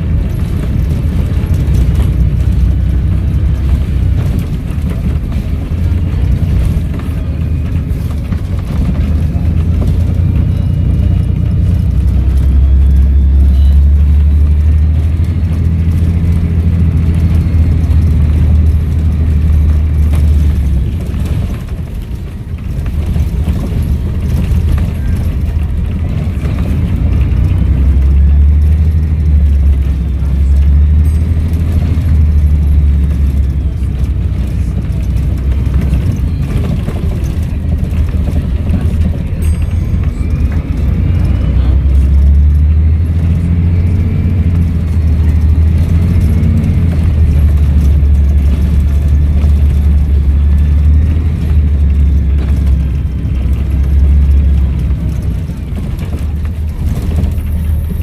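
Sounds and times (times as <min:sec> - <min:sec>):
bus diesel engine droning: 0:00.0 - 0:58.0
faint turbo whistle: 0:10.5 - 0:15.0.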